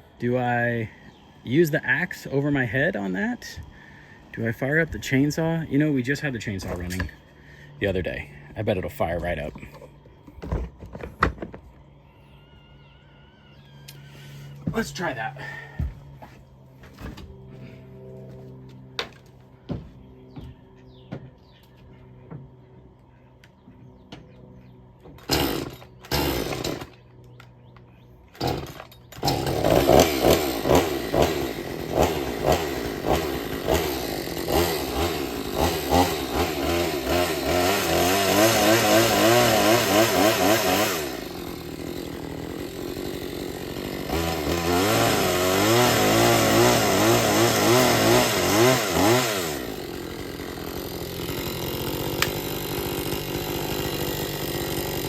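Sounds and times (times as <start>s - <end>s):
chainsaw starting and revving: 1.1s - 9.7s, 25.2s - 27.0s, 28.3s - 55.0s.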